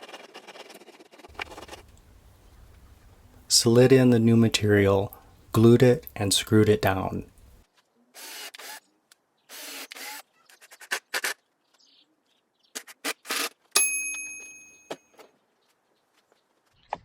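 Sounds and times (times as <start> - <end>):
wood scraping and rubbing: 0.0 - 2.1
ringing metallic strike: 13.8 - 14.9.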